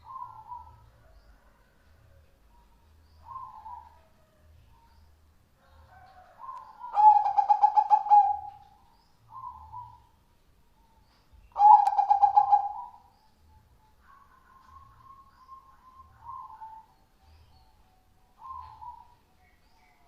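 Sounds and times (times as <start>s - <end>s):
dove cooing: 0.0s - 1.8s, 3.2s - 4.2s, 5.6s - 10.1s, 11.5s - 13.1s, 14.1s - 17.0s, 18.4s - 19.2s.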